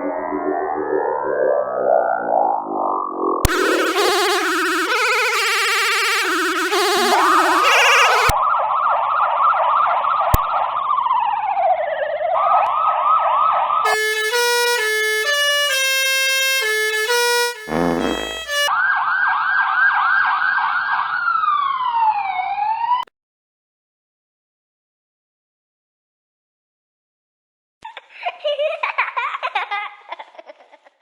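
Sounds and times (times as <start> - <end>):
held electronic notes: 3.5 - 8.3, 13.9 - 18.7
police siren yelping: 3.5 - 10.2, 13.9 - 23.0.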